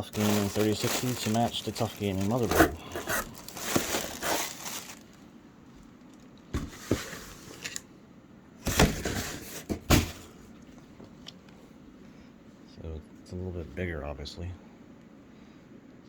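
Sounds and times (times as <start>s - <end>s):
packaging rustling and crinkling: 0.0s - 5.3s.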